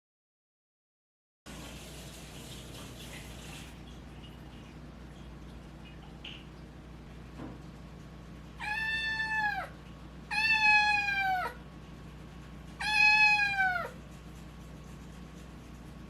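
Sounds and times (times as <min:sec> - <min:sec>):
young cat meowing: 0:08.6 - 0:11.6, 0:12.8 - 0:14.0.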